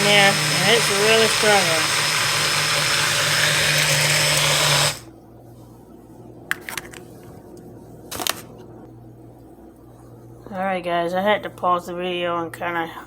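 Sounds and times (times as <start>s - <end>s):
blender motor whirring: 0.0s - 5.1s.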